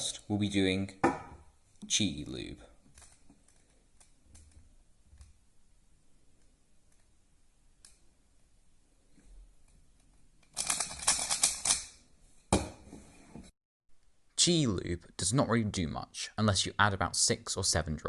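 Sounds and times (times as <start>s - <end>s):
speed cube clicking rapidly: 10.5s - 11.8s.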